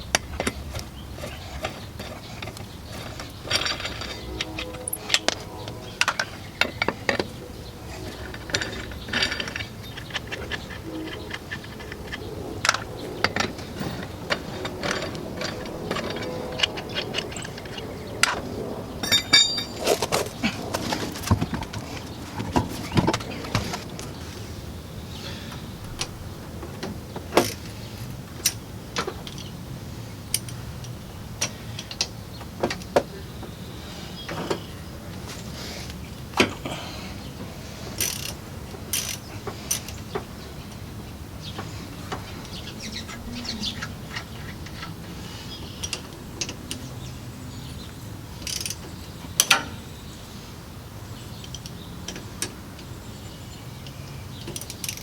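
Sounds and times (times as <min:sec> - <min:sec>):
metal tools clinking and clanking: 0:00.3 - 0:07.3, 0:08.0 - 0:17.8, 0:19.0 - 0:24.2.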